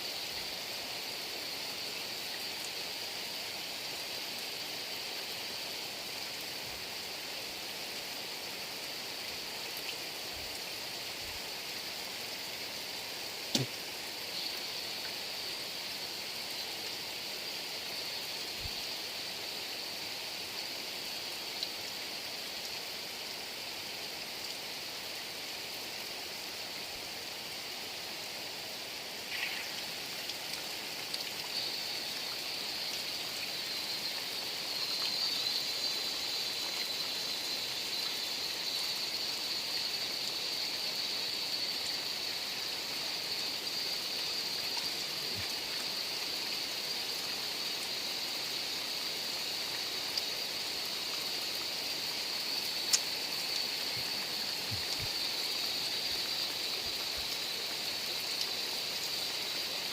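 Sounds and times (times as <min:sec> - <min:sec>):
sharp tap: 0:13.5 - 0:13.7.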